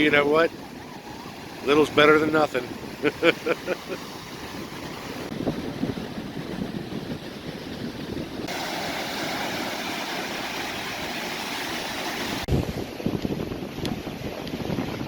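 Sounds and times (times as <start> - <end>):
surf washing on beach: 0.0 - 15.0
wind buffeting microphone: 0.0 - 15.0.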